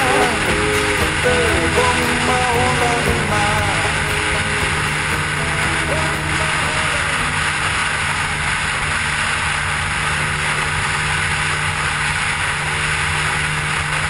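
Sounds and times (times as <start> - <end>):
constant hiss: 0.0 - 14.0
scooter engine running: 0.0 - 14.0.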